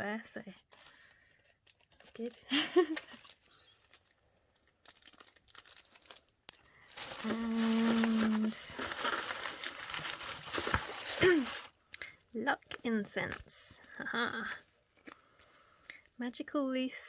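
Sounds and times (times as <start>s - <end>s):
packaging crinkling: 0.7s - 11.8s
person humming: 7.2s - 8.7s.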